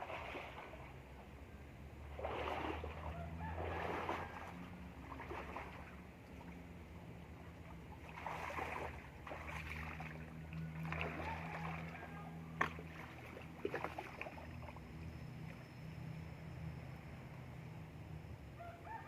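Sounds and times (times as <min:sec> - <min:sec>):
water sloshing and splashing: 0:00.0 - 0:01.3, 0:02.0 - 0:15.8
low steady hum: 0:00.0 - 0:19.0.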